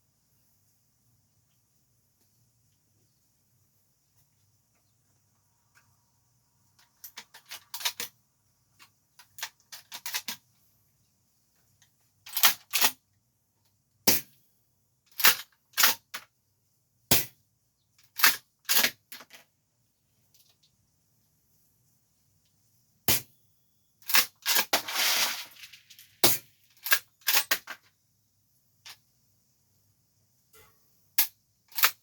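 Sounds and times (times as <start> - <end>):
small clicks of shells loading: 31.2 - 32.0.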